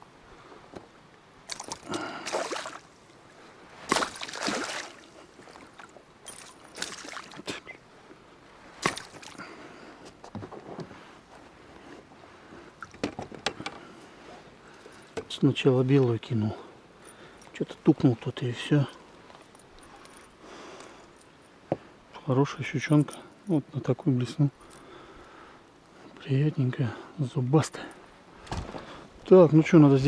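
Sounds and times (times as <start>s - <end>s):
water splashing against boat: 1.5s - 3.0s, 3.8s - 7.6s.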